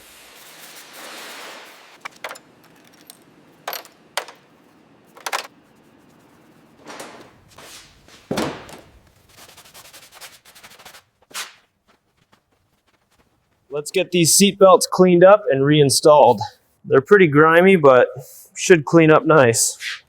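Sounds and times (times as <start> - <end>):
metal tools clicking and knocking: 2.1 - 4.5
heavy thud: 8.2 - 9.0.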